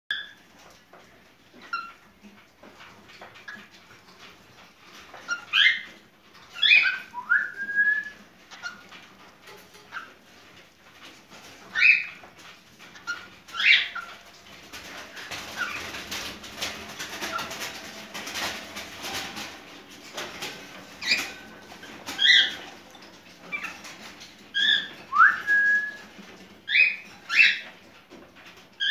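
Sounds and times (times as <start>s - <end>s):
scratchy rustling: 2.4s - 28.9s
cockatiel chirping: 13.0s - 14.2s, 24.6s - 26.0s.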